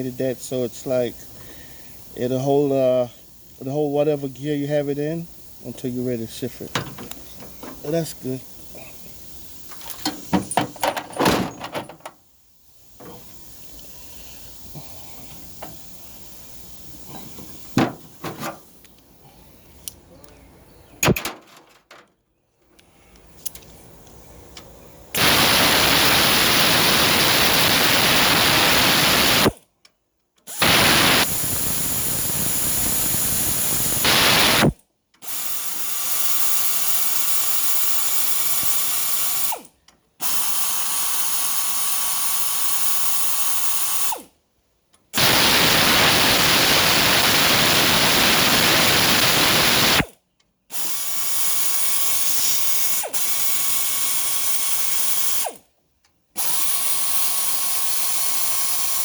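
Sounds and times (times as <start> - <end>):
metal parts clicking and knocking: 9.7 - 12.1
power tool running: 25.2 - 29.5, 30.5 - 44.3, 45.2 - 50.1, 50.7 - 55.6, 56.4 - 59.0.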